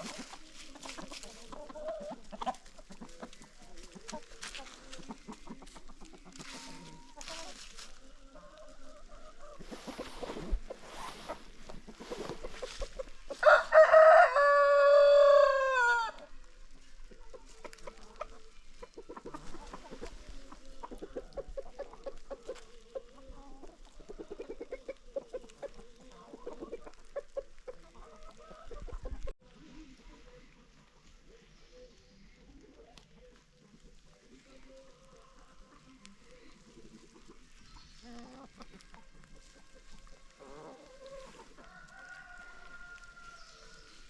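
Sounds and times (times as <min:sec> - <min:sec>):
hens clucking softly: 0:00.0 - 0:13.4, 0:14.4 - 0:44.0
rooster crowing: 0:13.4 - 0:16.2, 0:41.6 - 0:43.9.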